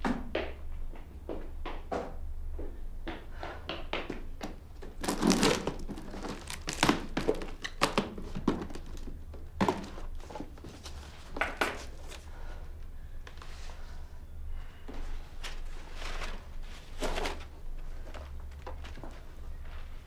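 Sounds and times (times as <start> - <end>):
wrapping crinkling and rustling: 5.0 - 9.2.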